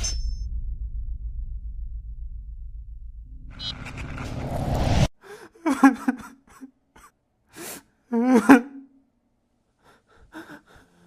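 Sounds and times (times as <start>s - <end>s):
rush of noise: 3.4s - 5.1s
person breathing: 5.2s - 5.6s, 9.8s - 11.0s.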